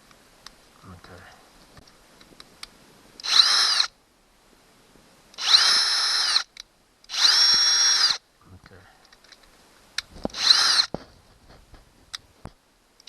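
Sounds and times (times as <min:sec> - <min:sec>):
power drill motor whining: 0:03.2 - 0:03.9, 0:05.4 - 0:06.5, 0:07.1 - 0:08.2, 0:10.3 - 0:10.9.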